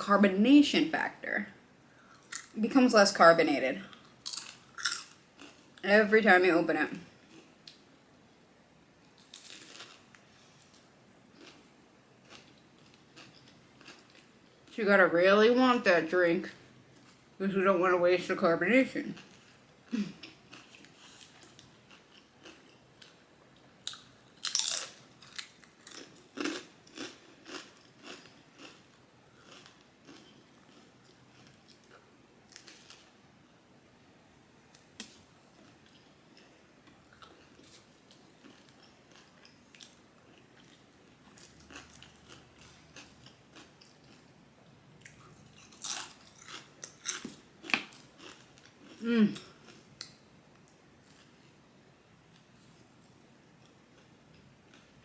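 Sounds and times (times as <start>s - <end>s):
chewing crunchy food: 3.9s - 5.8s, 9.1s - 14.7s, 19.2s - 33.2s, 35.0s - 44.4s, 45.0s - 51.4s
crunchy bite: 23.9s - 28.8s.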